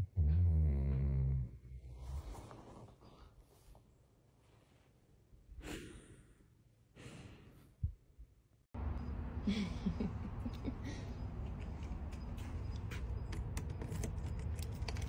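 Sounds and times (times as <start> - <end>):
faint squeaks and clicks: 11.2 - 15.0.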